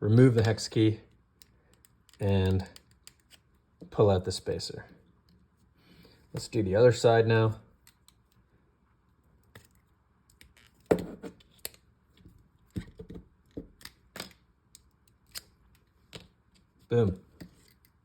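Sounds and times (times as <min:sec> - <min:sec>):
small metal clicks and knocks: 0:01.4 - 0:03.4.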